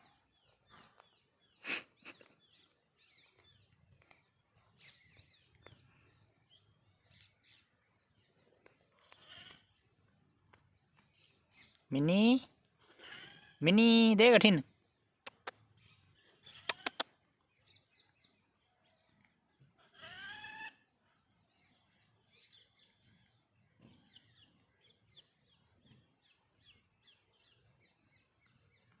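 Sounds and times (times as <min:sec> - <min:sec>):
small birds chirping: 0:00.0 - 0:29.0
sharp clicks: 0:15.3 - 0:15.6, 0:16.7 - 0:17.1.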